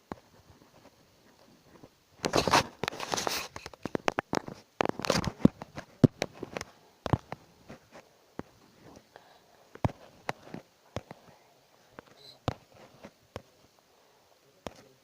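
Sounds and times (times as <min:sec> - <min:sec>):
small sharp clicks and knocks: 0:00.0 - 0:09.1
rustling and crinkling: 0:00.0 - 0:13.9.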